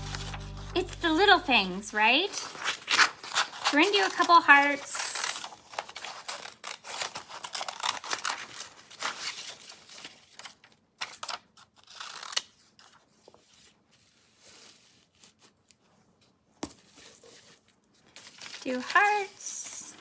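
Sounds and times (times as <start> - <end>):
scissors snipping paper: 2.2 - 9.6, 11.0 - 13.0.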